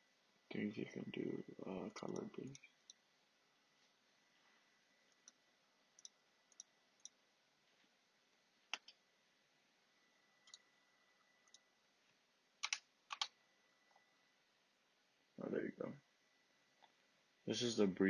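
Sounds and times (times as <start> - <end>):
computer mouse clicks: 6.0 - 7.2, 8.7 - 9.0, 10.4 - 10.7, 11.4 - 11.7, 12.6 - 13.4.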